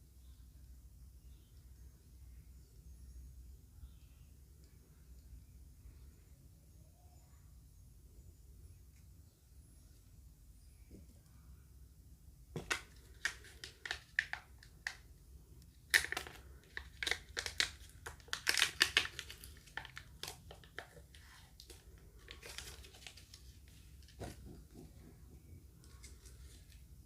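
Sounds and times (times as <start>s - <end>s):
wrapper crinkling and tearing: 12.7s - 15.0s, 15.9s - 24.4s.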